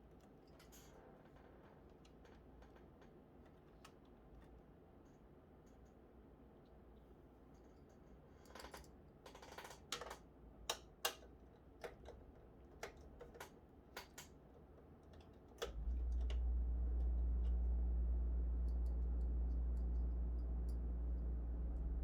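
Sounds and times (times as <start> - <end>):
loud steady low hum: 15.8 - 22.0.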